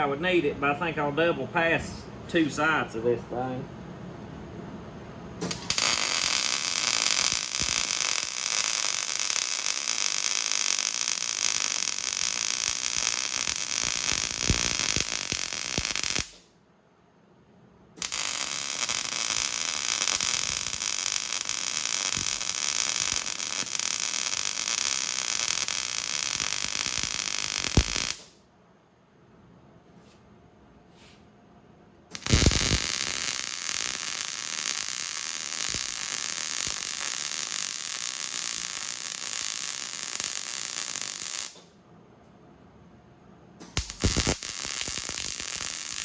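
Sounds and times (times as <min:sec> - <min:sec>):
welding arc crackling: 0:05.4 - 0:16.4, 0:18.0 - 0:28.4, 0:32.1 - 0:41.7, 0:43.6 - 0:46.0.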